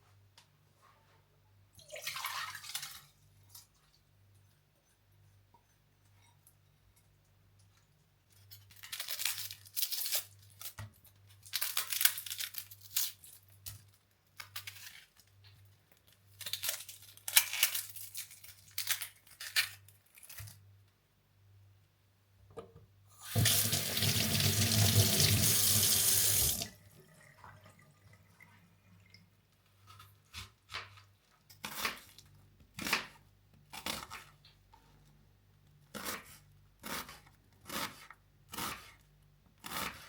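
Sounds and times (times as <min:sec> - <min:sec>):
water splashing in sink: 0:01.8 - 0:03.1, 0:23.2 - 0:29.2
tap running: 0:23.3 - 0:26.7.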